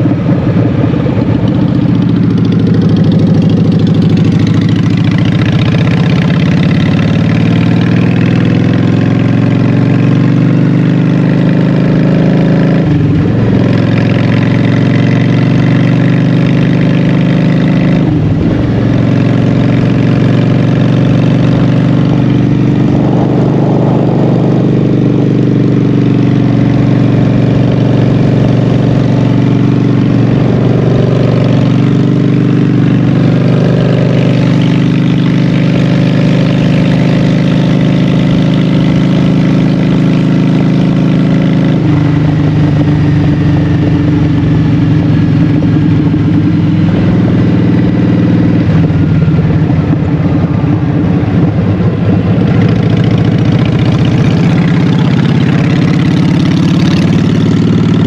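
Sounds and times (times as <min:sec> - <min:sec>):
motorcycle engine exhaust: 0:00.0 - 0:58.0.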